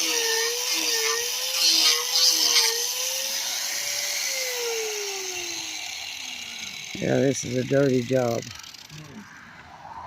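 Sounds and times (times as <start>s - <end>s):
scratchy grinding on wood: 0.0s - 3.6s
electric sanding tool running: 0.0s - 9.1s.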